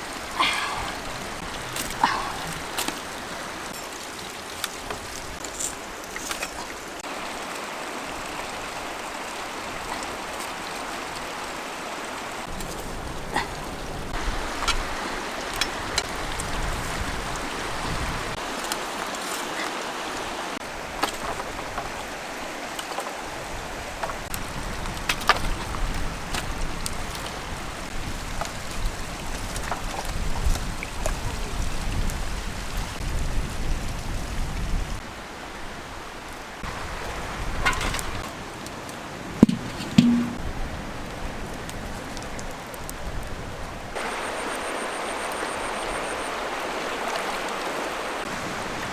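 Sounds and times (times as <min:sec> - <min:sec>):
water running and splashing: 0:00.0 - 0:34.8, 0:36.2 - 0:40.5, 0:43.8 - 0:48.9
sharp knocks and taps: 0:39.4 - 0:40.4.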